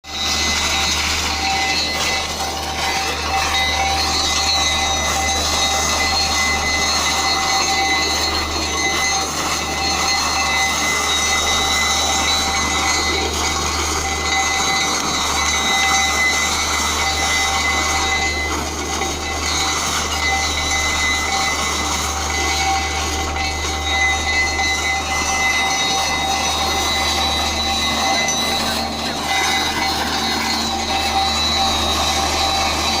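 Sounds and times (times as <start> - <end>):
train running with steady whine: 0.1 - 33.0.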